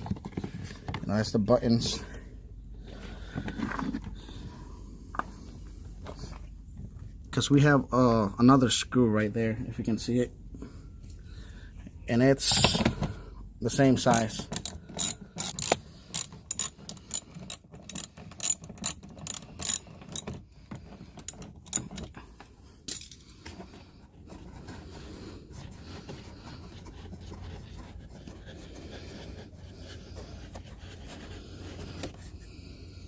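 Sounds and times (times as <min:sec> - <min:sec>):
low steady background rumble: 0:00.0 - 0:33.0
ratchet wrench clicking: 0:14.5 - 0:20.3.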